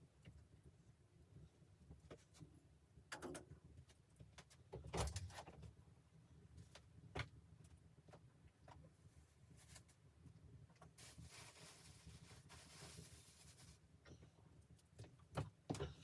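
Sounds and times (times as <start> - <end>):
faint knocks and clunks: 14.0 - 16.0.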